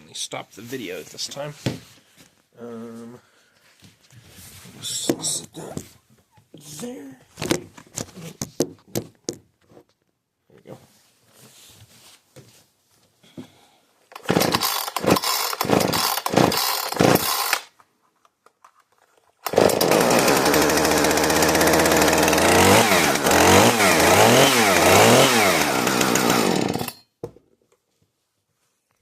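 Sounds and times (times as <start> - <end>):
chainsaw engine revving: 14.1 - 17.7, 19.4 - 27.0.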